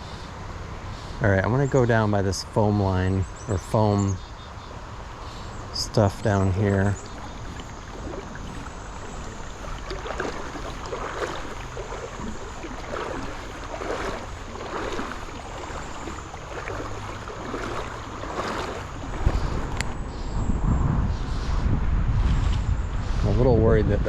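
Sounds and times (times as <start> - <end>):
creek flowing: 1.9 - 20.0
wind buffeting microphone: 4.8 - 24.0
footsteps wading through water: 5.5 - 20.0.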